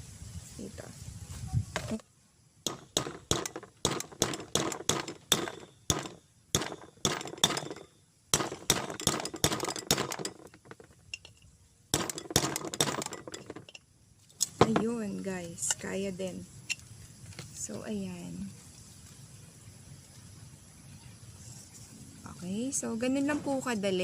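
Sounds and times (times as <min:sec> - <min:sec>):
hammer tapping nail: 0:02.7 - 0:07.8, 0:08.4 - 0:10.4.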